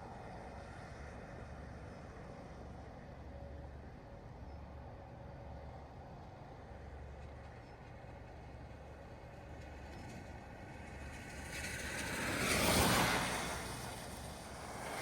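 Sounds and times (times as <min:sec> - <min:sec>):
vehicle tyre and road noise: 0:08.0 - 0:15.0.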